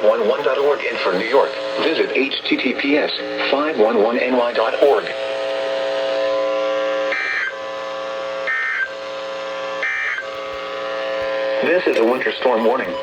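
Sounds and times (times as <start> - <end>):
buzzy alert tone: 8.2 - 12.9.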